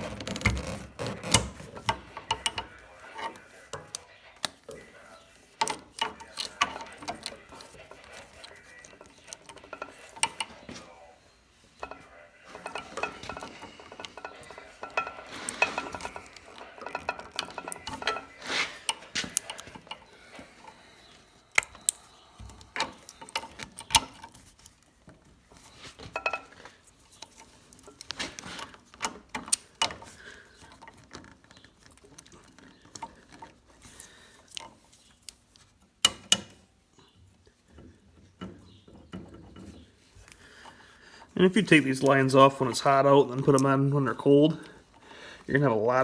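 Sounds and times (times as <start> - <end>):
metallic clicks of hose couplers: 0.0 - 10.8, 11.8 - 36.7.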